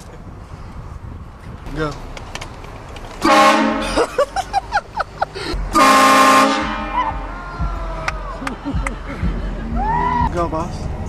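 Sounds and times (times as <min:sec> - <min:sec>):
train horn blasts: 0:03.2 - 0:03.9, 0:05.7 - 0:07.3.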